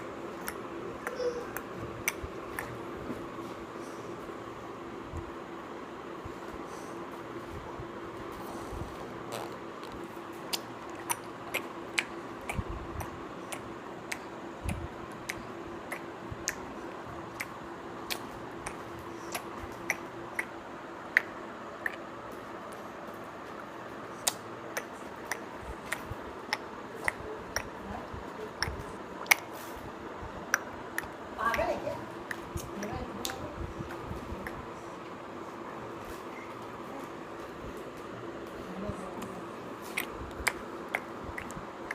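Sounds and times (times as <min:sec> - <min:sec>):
baby sucking and swallowing milk: 0:08.4 - 0:16.1, 0:39.8 - 0:41.9.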